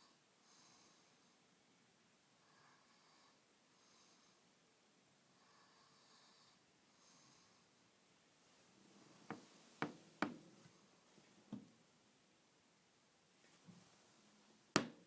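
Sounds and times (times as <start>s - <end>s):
soft sleeping breathing: 0.0s - 1.6s, 2.3s - 11.6s.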